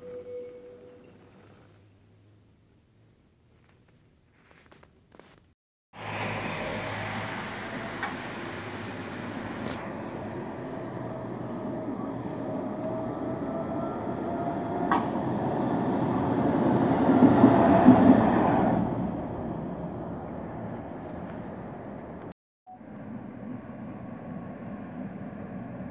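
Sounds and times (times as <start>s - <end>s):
tram running on rails: 6.0s - 25.9s.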